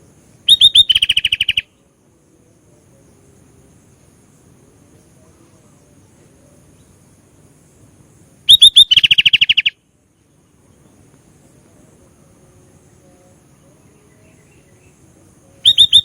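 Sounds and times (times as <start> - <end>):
bird song with trill: 0.0 - 2.0, 8.5 - 11.2, 12.5 - 16.0.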